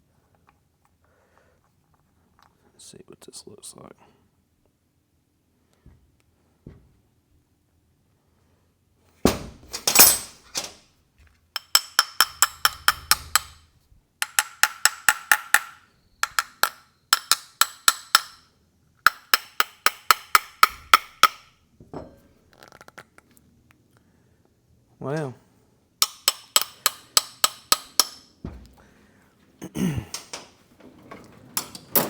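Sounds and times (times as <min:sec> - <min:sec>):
handling noise: 0:09.3 - 0:11.5, 0:27.9 - 0:32.0.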